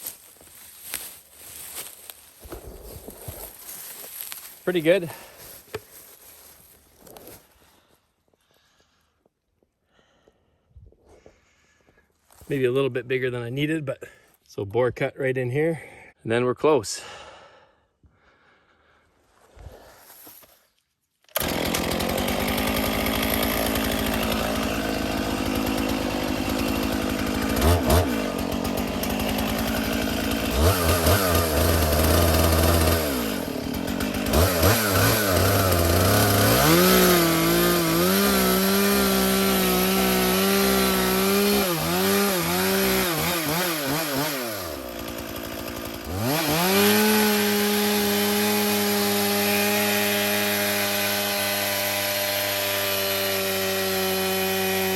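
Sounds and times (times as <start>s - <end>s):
chainsaw cutting tree: 0.0s - 7.4s, 21.3s - 54.9s.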